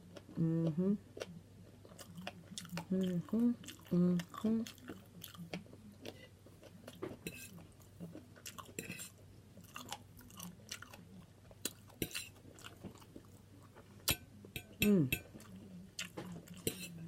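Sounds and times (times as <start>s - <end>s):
person chewing food: 0.0s - 14.2s, 15.3s - 17.0s.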